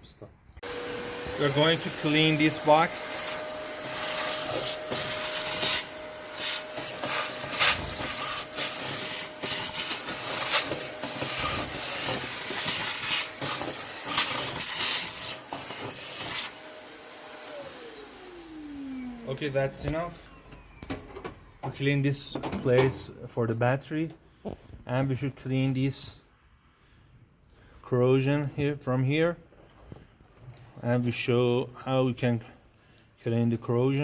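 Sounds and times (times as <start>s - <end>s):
vacuum cleaner motor whine: 0.6s - 21.4s.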